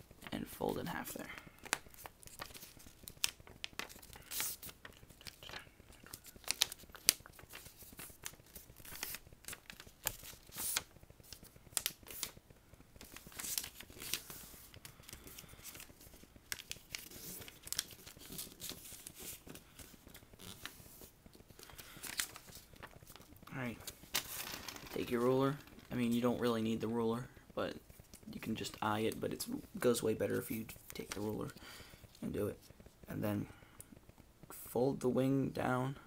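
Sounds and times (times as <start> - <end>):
paper crinkling and rustling: 0.2 - 12.4, 13.0 - 27.0, 27.8 - 33.0.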